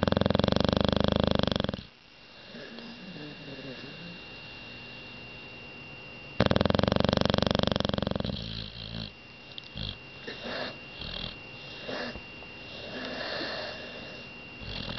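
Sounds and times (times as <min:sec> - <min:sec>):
dog snoring: 0:00.0 - 0:04.6, 0:06.4 - 0:14.9
dog wheezy snuffling breaths: 0:00.0 - 0:04.8, 0:06.4 - 0:14.9.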